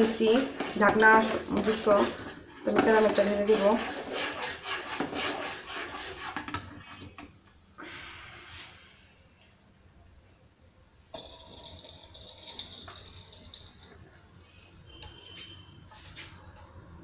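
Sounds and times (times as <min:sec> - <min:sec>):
caramel pouring into steel bowl: 0:11.1 - 0:14.0.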